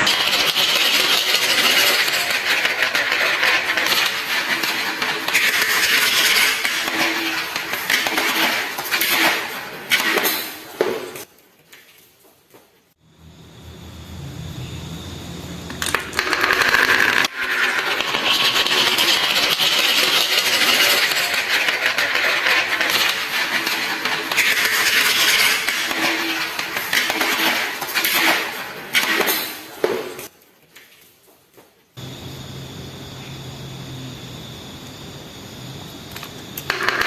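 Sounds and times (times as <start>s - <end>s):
marbles rattling down track: 0.0s - 8.3s, 15.8s - 27.4s, 36.7s - 37.0s.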